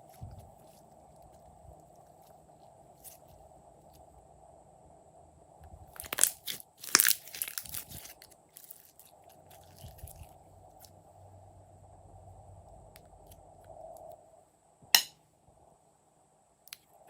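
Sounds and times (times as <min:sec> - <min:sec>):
slime squishing: 0:05.9 - 0:10.9
crunchy pops and crackles: 0:05.9 - 0:11.0.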